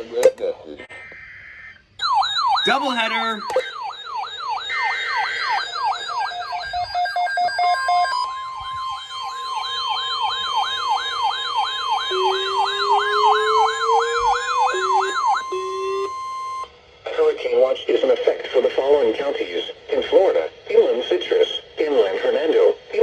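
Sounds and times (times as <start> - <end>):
fast high warble: 0.0 - 6.9, 8.2 - 16.1
sweeping siren tone: 0.9 - 16.7
steady high alert tone: 2.0 - 16.6.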